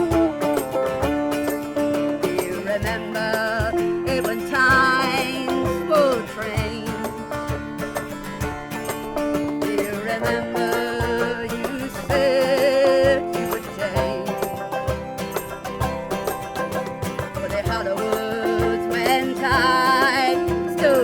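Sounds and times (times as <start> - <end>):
steady beat: 0.0 - 2.2
sustained melody with vibrato: 0.0 - 21.0.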